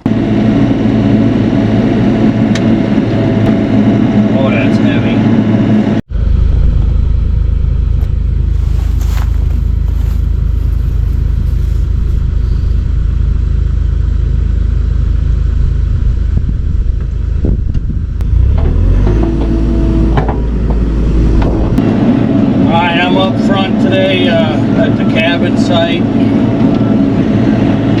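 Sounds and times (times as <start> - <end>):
heavy engine rumbling: 0.0 - 28.0
steady whine: 0.0 - 28.0.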